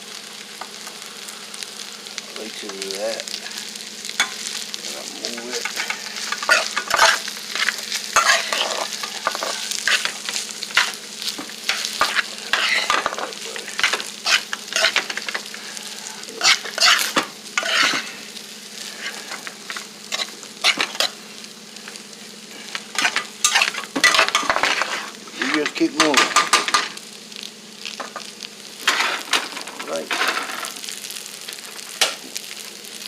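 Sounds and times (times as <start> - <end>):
rice sizzling in a pan: 0.0 - 33.0
utensil scraping a pan: 5.6 - 11.0, 11.7 - 13.2, 13.8 - 15.5, 16.4 - 18.2, 18.9 - 21.2.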